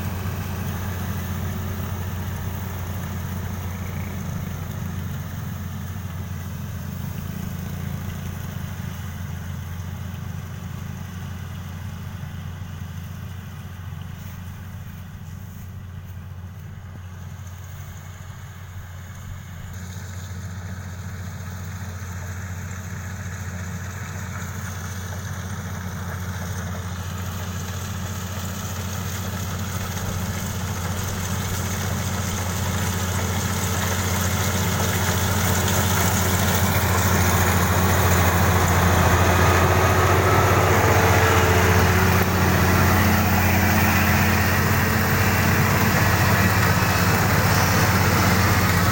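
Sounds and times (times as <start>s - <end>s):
diesel engine running: 0.0s - 48.9s.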